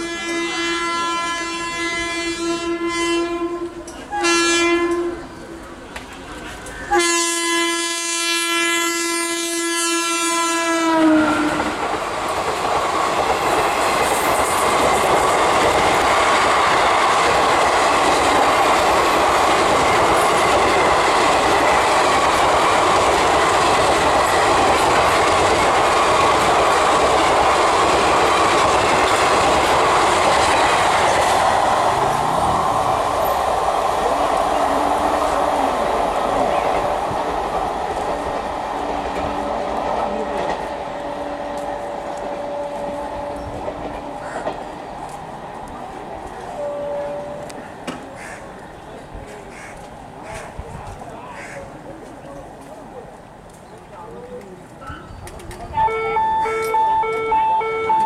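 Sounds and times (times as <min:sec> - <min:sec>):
locomotive horn blasts: 0:00.0 - 0:05.3, 0:06.9 - 0:11.7, 0:42.2 - 0:43.6, 0:46.6 - 0:47.5, 0:55.8 - 0:58.0
wheels on rails: 0:11.4 - 0:46.6.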